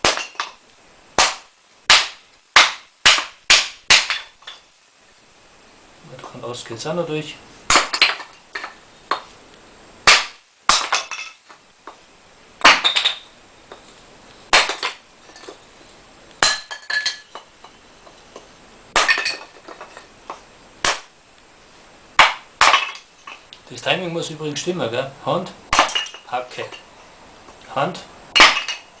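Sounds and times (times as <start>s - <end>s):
axe chopping into wood: 1.2s - 4.3s, 7.7s - 8.2s, 10.1s - 11.1s, 20.8s - 21.1s, 25.7s - 26.1s.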